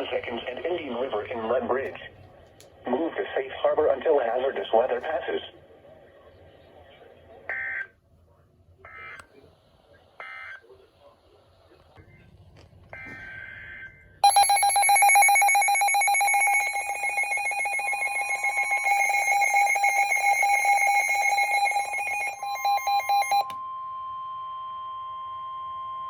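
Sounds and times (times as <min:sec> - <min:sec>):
rapidly pulsing alarm beep: 0:10.2 - 0:10.6, 0:13.0 - 0:23.5
steady warning tone: 0:12.9 - 0:26.0.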